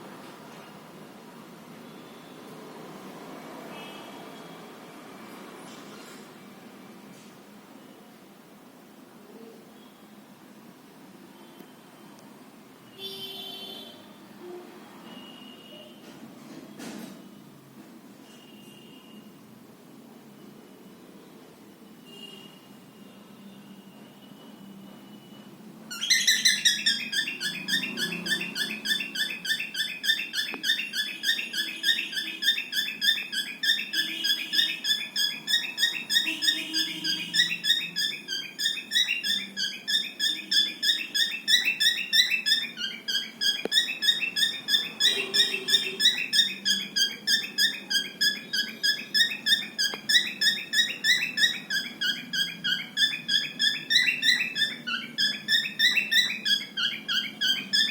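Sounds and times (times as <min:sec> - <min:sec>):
cockatiel chirping: 0:25.9 - 0:57.9.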